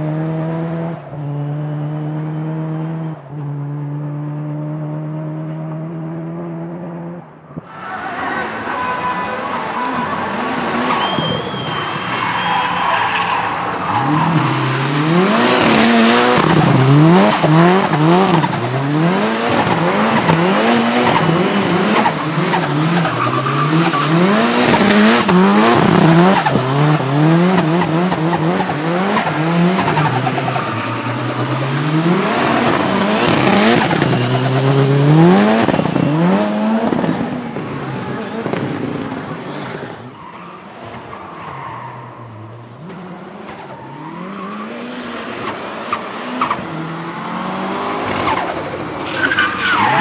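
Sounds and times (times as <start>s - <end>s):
car engine revving: 0.0s - 50.0s
tyres squealing: 7.7s - 18.8s, 20.2s - 36.4s.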